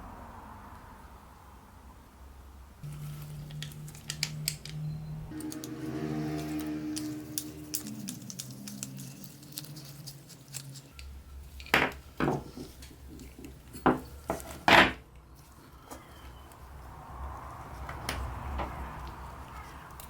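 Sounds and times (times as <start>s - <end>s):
metal parts clinking: 2.9s - 5.8s, 6.4s - 14.5s.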